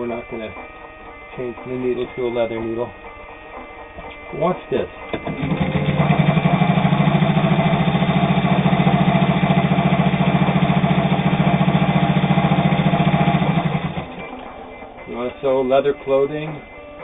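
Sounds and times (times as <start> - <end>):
sewing machine stitching: 5.1 - 14.2.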